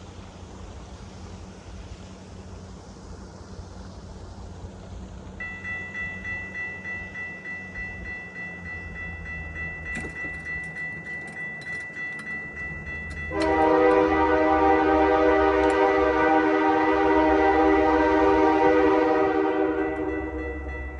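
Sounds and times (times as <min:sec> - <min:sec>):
crossing warning bell ringing: 0:05.4 - 0:20.9
locomotive air horn: 0:13.1 - 0:20.7.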